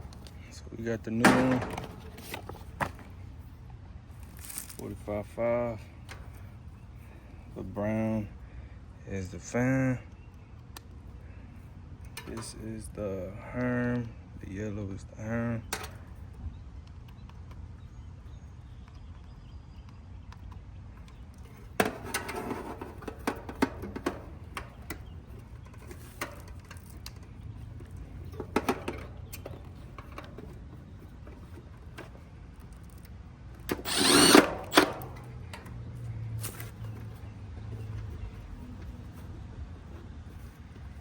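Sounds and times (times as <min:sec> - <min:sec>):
power drill driving a screw: 0:33.7 - 0:35.1.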